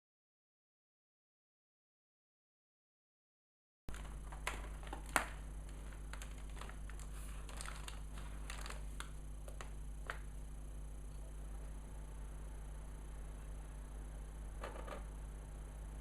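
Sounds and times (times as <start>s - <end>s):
steady low hum: 3.9s - 16.0s.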